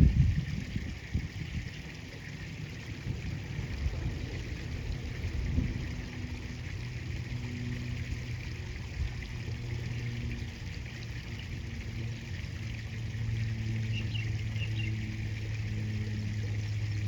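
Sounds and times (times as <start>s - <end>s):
low rumble: 0.0s - 1.7s, 2.8s - 10.6s
river water flowing: 0.8s - 17.0s.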